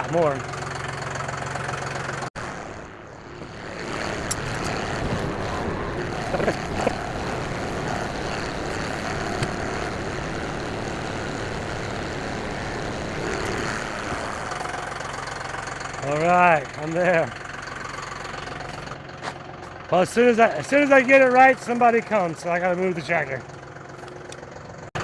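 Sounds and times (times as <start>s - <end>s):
tractor engine running: 0.0s - 25.0s.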